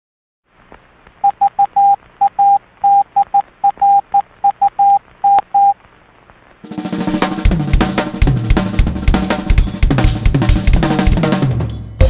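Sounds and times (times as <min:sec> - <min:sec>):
faint radio hiss: 0:00.5 - 0:11.3
morse code beeps: 0:01.2 - 0:05.8.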